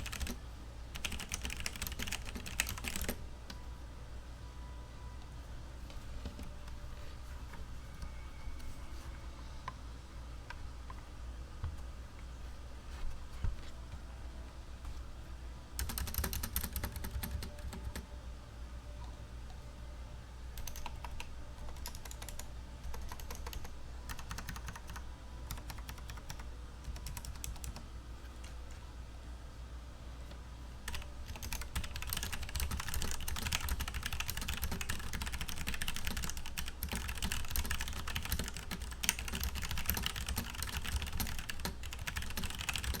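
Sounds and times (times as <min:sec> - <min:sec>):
mechanical keyboard typing: 0:00.0 - 0:03.2, 0:15.8 - 0:18.0, 0:20.6 - 0:27.8, 0:30.8 - 0:43.0.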